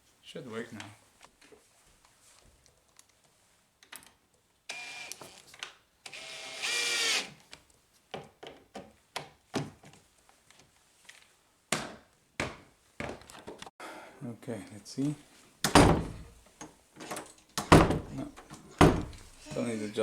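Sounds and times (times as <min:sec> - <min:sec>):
cordless drill driving screws: 0:04.7 - 0:05.4, 0:06.0 - 0:07.4
short knocks: 0:15.7 - 0:16.3, 0:17.6 - 0:19.4.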